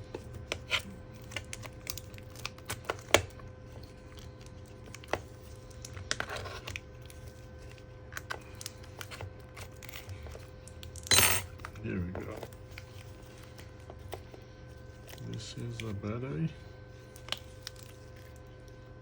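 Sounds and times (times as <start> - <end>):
adhesive crackling and tearing: 0.4 - 11.1, 17.1 - 18.5.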